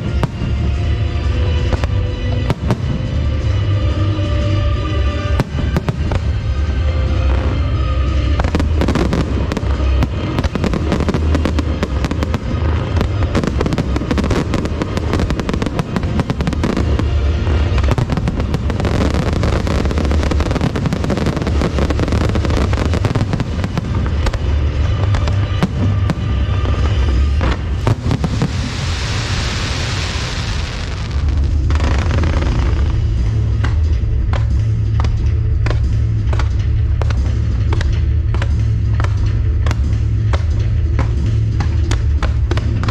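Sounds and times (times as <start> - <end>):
fireworks bursting and crackling: 0.0 - 42.9
music with heavy bass: 0.0 - 42.9
fireworks hissing: 5.4 - 33.5.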